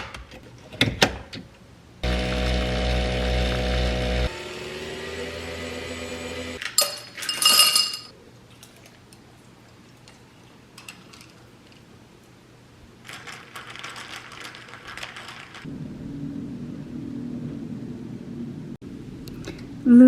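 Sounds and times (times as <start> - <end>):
hard objects clattering and clinking: 6.6 - 8.1.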